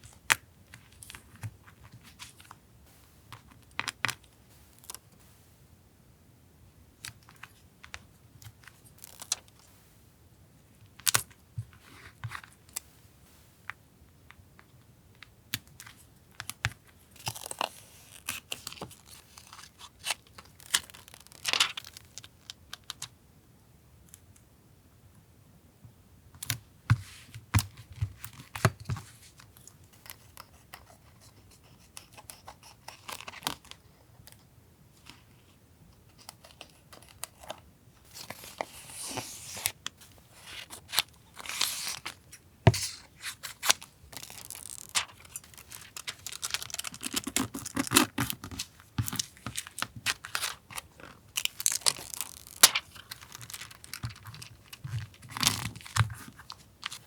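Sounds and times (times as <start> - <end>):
paper rustling and tearing: 42.8 - 50.8, 51.5 - 57.0.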